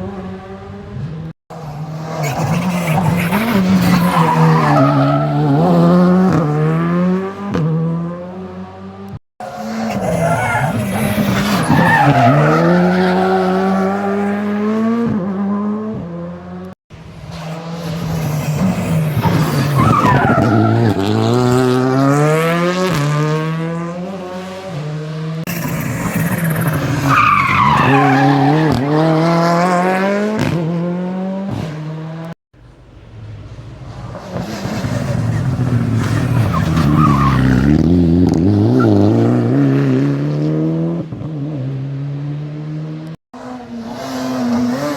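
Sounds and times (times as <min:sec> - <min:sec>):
rally car engines revving: 0:00.0 - 0:44.9
tyre squeal: 0:17.9 - 0:21.2, 0:25.6 - 0:28.9.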